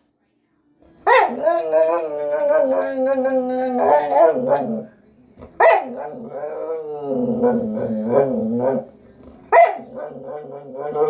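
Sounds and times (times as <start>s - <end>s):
dog barking: 1.0s - 2.1s, 5.5s - 6.7s, 9.5s - 11.0s
dog grumbling: 1.2s - 11.0s.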